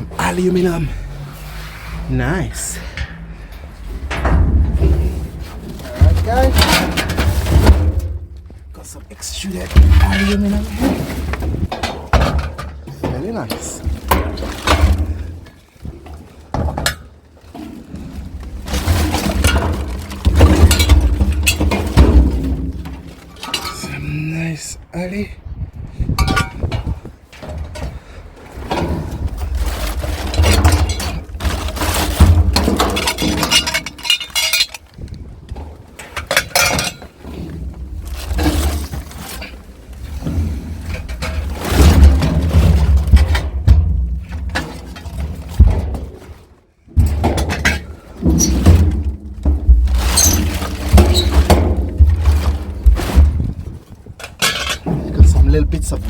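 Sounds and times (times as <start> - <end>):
low rumble: 0.0 - 11.7
scrap metal clinking and clattering: 0.0 - 24.1, 26.1 - 56.0
glassy junk clinking and clattering: 33.0 - 34.9.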